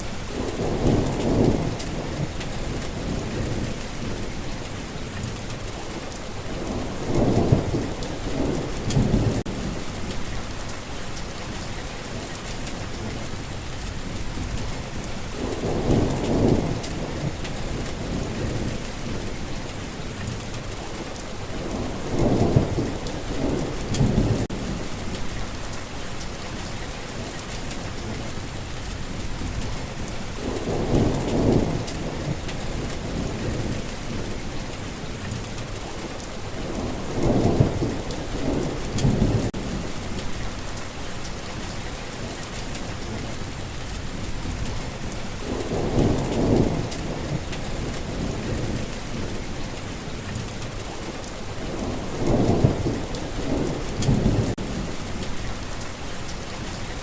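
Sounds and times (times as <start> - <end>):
steady rain falling: 0.0 - 57.0
thunder rolling: 0.1 - 4.6, 6.4 - 10.8, 13.8 - 20.0, 20.7 - 25.8, 28.9 - 35.0, 35.8 - 40.8, 43.9 - 55.8.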